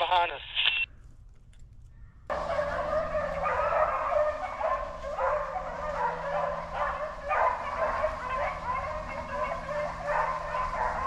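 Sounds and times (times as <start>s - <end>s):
hounds baying and yelping: 2.3s - 11.0s.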